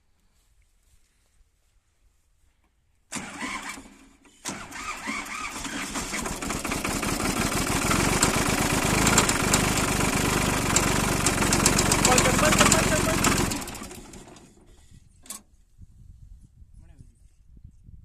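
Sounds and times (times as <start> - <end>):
diesel engine starting with knock: 3.1 - 14.7.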